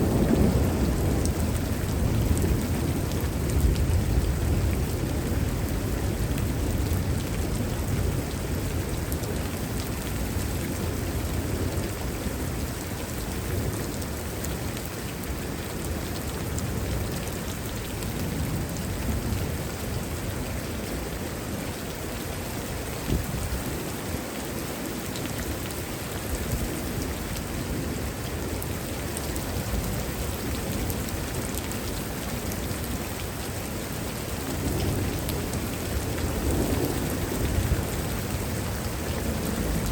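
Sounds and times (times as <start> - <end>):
thunder rumbling: 0.0 - 7.2, 34.6 - 39.9
heavy rain falling: 0.0 - 39.9.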